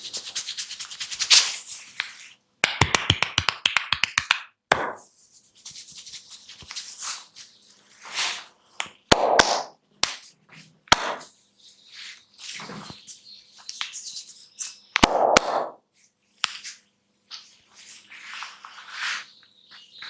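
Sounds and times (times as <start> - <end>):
rubbing and scratching through hair: 0.0 - 2.4, 5.0 - 8.4
hands tapping and slapping head: 2.0 - 5.0, 8.8 - 10.3, 10.9 - 11.3, 15.0 - 15.8
sharp snaps: 8.8 - 10.3, 14.9 - 15.8.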